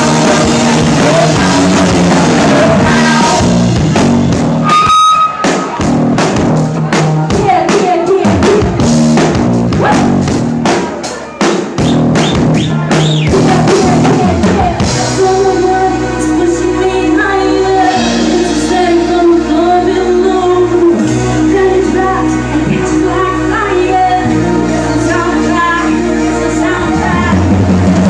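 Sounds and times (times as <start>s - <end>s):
person singing: 0.0s - 3.7s, 6.9s - 8.8s, 12.8s - 28.0s
drum kit beat: 0.0s - 16.5s, 17.4s - 22.1s, 23.9s - 28.0s
live band playing pop-rock: 0.0s - 28.0s.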